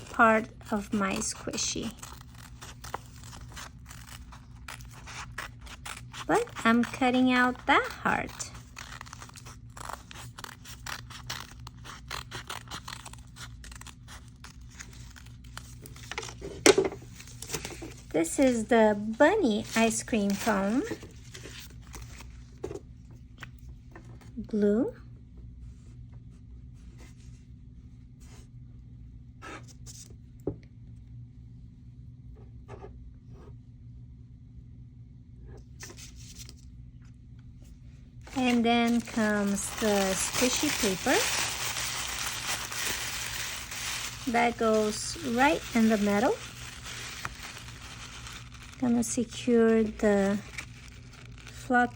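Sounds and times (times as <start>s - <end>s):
scissors cutting paper: 0.0s - 16.3s, 38.3s - 51.9s.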